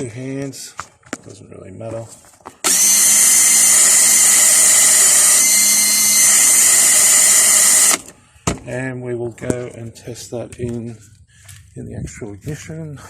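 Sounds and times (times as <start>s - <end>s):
buffing wheel whining: 2.6s - 8.1s.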